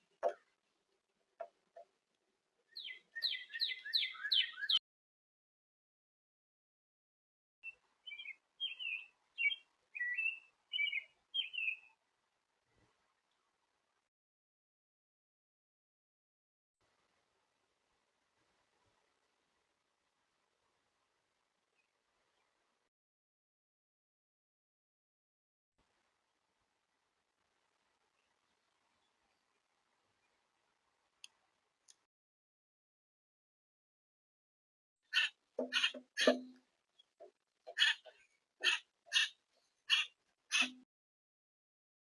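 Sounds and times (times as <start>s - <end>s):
songbird chirping: 2.6s - 4.8s, 7.6s - 12.1s, 35.0s - 40.8s.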